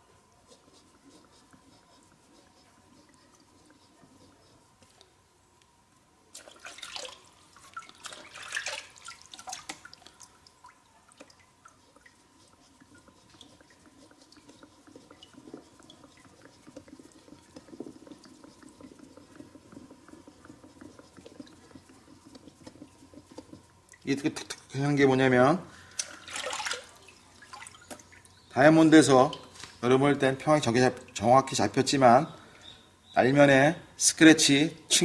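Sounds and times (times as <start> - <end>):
blade rubbing on wet whetstone: 0.4 - 4.8, 11.8 - 24.5
water dripping and splashing: 6.3 - 24.8, 25.9 - 30.0.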